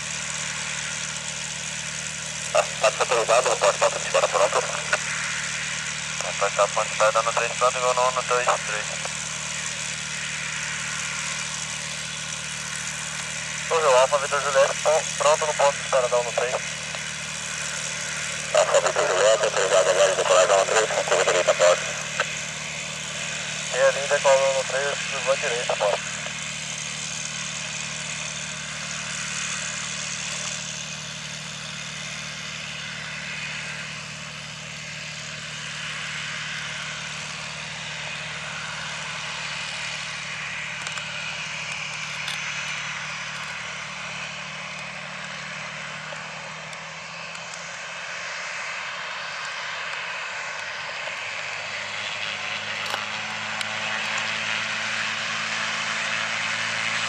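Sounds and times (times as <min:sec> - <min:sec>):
jet engines at takeoff power: 0:00.0 - 0:57.0.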